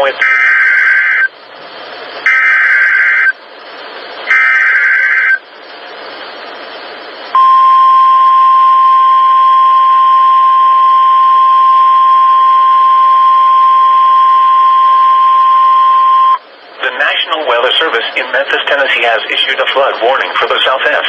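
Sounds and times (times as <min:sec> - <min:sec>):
radio hiss: 0:00.0 - 0:07.4, 0:16.0 - 0:21.0
steady alarm tone: 0:00.2 - 0:01.4, 0:02.2 - 0:03.4, 0:04.2 - 0:05.5, 0:07.3 - 0:16.5.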